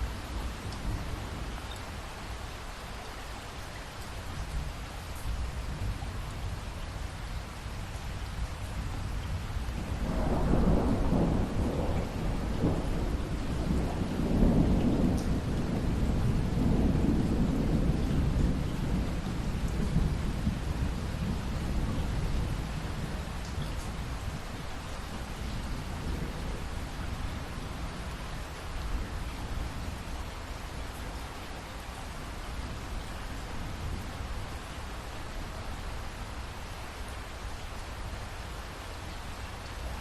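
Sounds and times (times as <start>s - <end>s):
steady rain: 0.0s - 40.0s
rolling thunder: 9.7s - 28.1s.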